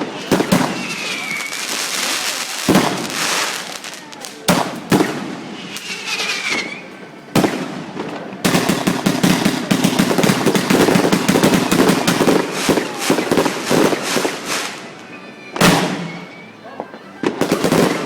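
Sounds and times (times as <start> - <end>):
firework whistle falling: 0.0 - 3.7, 5.5 - 7.0, 11.6 - 18.0
firework bang: 0.0 - 14.8, 15.5 - 16.4
rapid firecracker bangs: 0.0 - 18.0.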